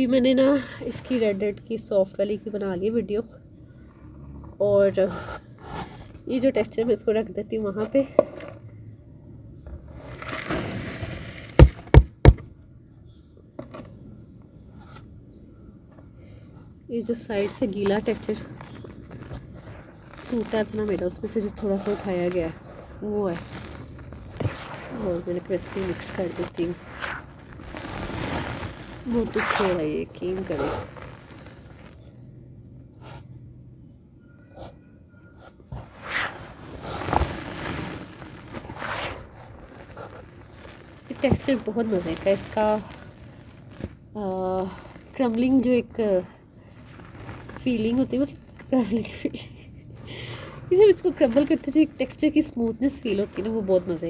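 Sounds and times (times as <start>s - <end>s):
rustling scrape: 9.8s - 11.8s, 17.1s - 32.2s, 35.4s - 54.0s
dry clay dirt crumbling by hand: 17.2s - 32.2s, 36.2s - 49.0s.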